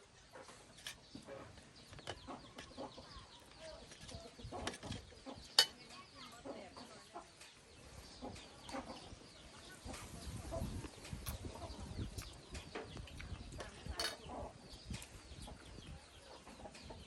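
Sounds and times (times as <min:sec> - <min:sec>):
chickens clucking: 0:00.0 - 0:17.0
wind rumble on microphone: 0:07.8 - 0:17.0.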